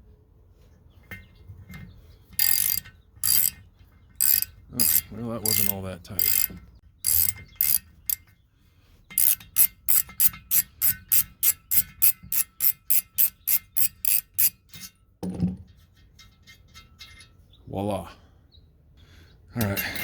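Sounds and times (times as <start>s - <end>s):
ratchet wrench clicking: 2.4s - 3.6s, 4.2s - 8.2s, 9.1s - 14.9s.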